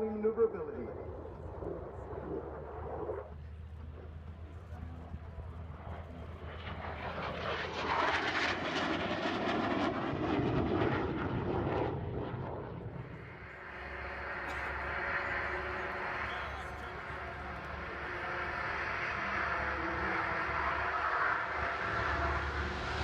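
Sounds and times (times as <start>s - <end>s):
jet airliner flying past: 0.0s - 23.0s.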